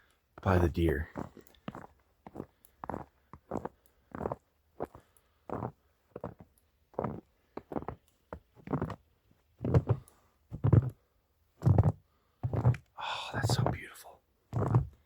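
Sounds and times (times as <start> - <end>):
footsteps crunching through snow: 14.5 - 15.0.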